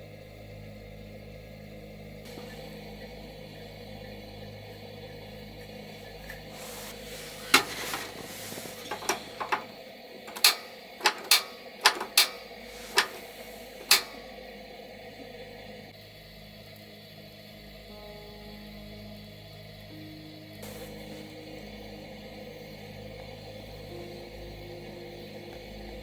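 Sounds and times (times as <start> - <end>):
steady low hum: 0.0 - 26.0
sharp knocks and clicks: 6.6 - 14.3.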